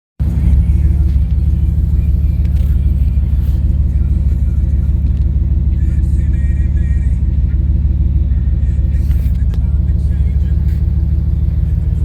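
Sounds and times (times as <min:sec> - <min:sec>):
car engine idling: 0:00.2 - 0:12.0.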